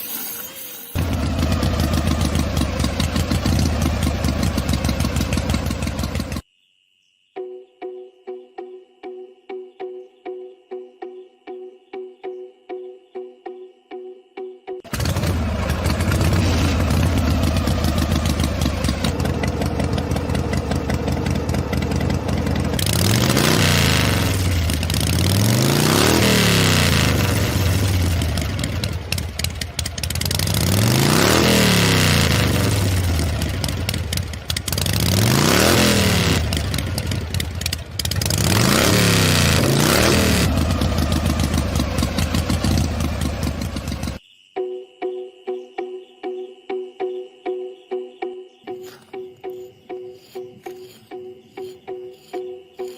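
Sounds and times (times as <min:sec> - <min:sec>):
engine revving and idling: 0:01.0 - 0:06.4, 0:14.9 - 0:44.2.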